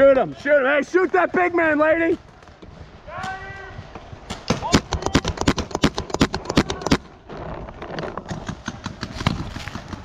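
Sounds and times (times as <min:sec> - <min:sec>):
paintball markers firing: 0:04.3 - 0:07.1, 0:07.8 - 0:10.0.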